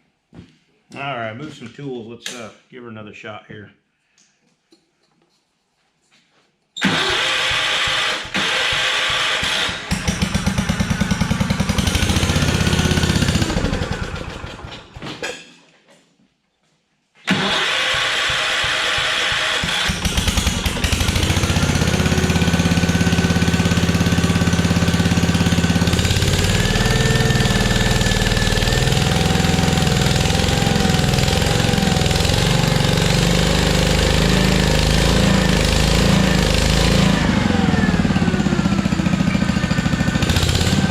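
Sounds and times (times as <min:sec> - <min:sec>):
engine cranking: 0:06.8 - 0:15.0, 0:17.3 - 0:40.9
single-cylinder engine running: 0:06.8 - 0:15.0, 0:17.3 - 0:40.9.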